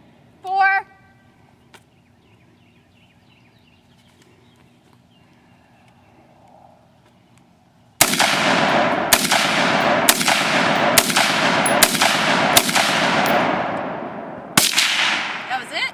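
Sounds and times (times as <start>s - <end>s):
rifle shots with echo: 8.0s - 15.9s.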